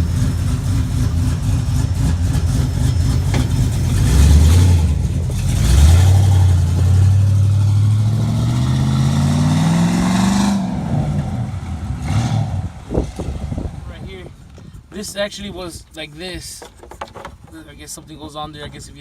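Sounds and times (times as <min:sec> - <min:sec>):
vehicle engine revving: 0:00.0 - 0:14.4.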